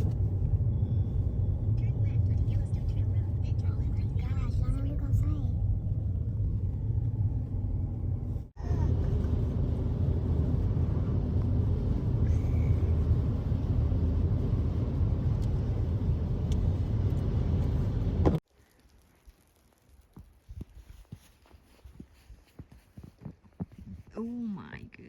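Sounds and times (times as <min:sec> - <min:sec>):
car engine and tyres rumbling: 0:00.0 - 0:18.4.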